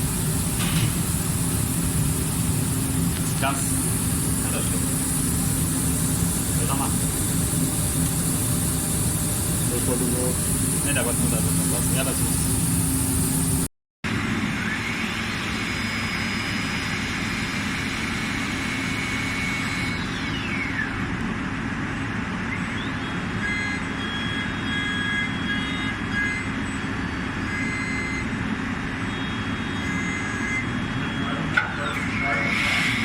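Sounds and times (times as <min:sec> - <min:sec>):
steady mechanical hiss: 0:00.0 - 0:13.7
milling machine whine: 0:00.0 - 0:33.0.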